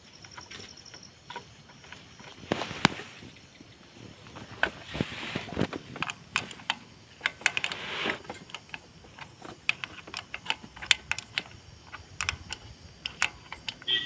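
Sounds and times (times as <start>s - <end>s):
rustling swishes: 4.0s - 5.9s
sharp metallic clicks: 5.6s - 14.0s.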